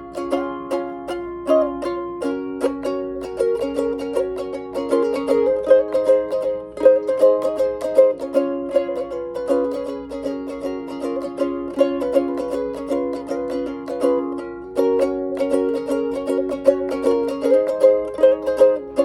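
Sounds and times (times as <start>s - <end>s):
ukulele plucked tune: 0.0s - 19.0s.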